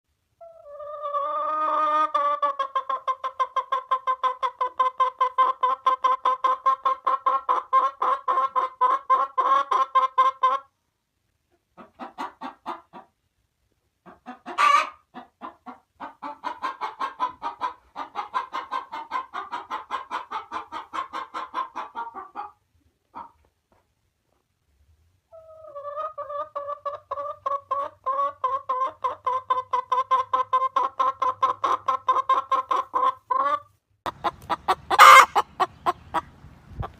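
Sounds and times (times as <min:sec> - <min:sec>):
chicken clucking: 0:00.3 - 0:24.6, 0:25.3 - 0:36.9
chicken squawk: 0:00.4 - 0:10.7, 0:11.8 - 0:13.1, 0:14.0 - 0:23.4, 0:25.3 - 0:36.9.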